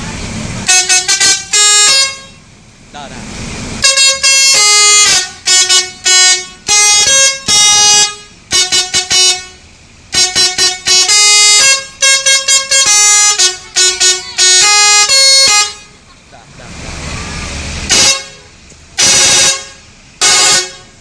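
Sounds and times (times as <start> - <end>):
multi-tone air horn jingle: 3.8 - 16.0.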